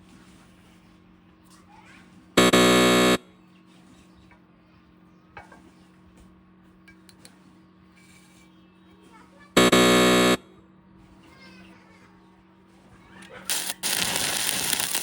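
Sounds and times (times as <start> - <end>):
loud harsh buzz: 2.4 - 3.3, 9.6 - 10.6, 13.5 - 15.0
steady low hum: 2.4 - 3.4.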